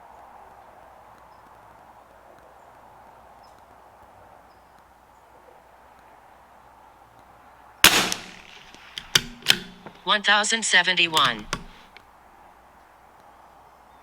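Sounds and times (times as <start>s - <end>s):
rifle shot: 7.8s - 10.4s, 11.1s - 11.8s
quick clicks: 7.9s - 10.1s, 11.0s - 12.0s.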